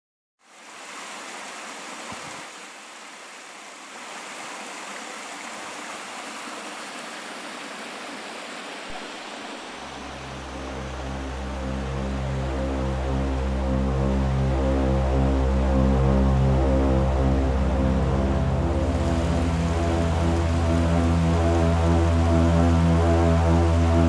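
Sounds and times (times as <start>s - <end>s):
waterfall rushing: 3.8s - 24.0s
music: 10.0s - 24.0s.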